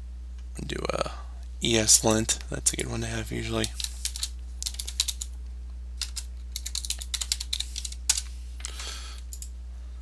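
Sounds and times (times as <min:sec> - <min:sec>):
faint low hum: 0:00.0 - 0:10.0
typing on computer keyboard: 0:04.0 - 0:05.3, 0:06.0 - 0:08.2.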